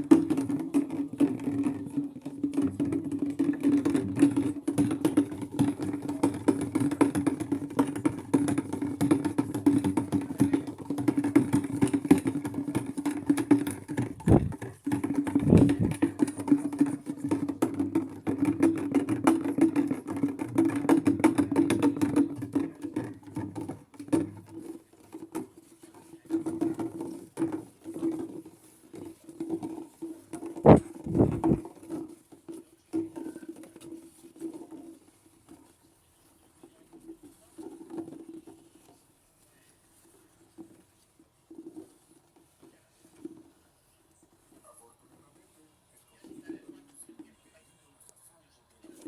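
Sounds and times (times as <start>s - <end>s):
low thuds: 30.6s - 31.6s.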